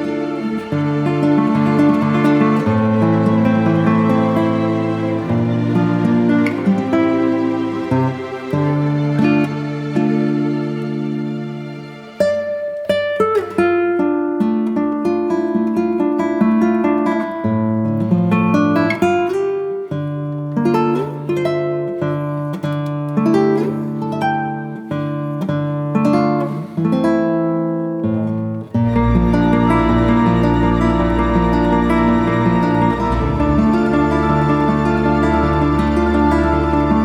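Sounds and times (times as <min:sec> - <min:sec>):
plucked acoustic guitar music: 0:00.0 - 0:37.0.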